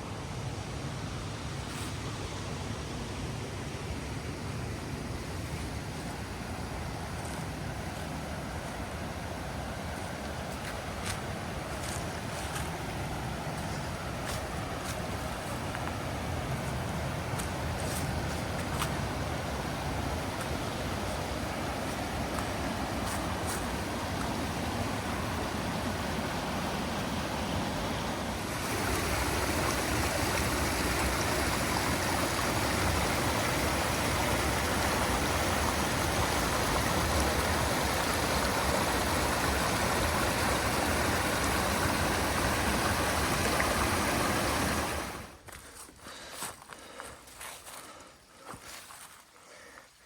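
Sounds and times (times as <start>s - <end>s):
waterfall rushing: 6.0s - 45.4s.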